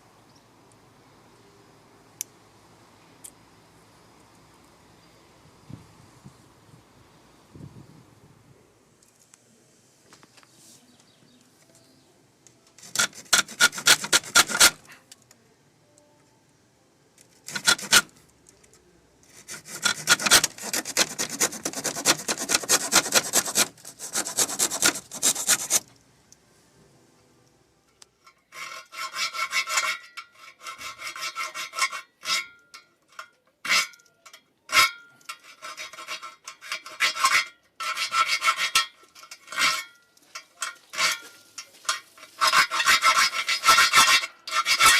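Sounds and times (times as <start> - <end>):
hand saw strokes: 12.8 - 14.9, 17.4 - 18.2, 19.2 - 25.9, 28.4 - 32.7, 34.7 - 44.9.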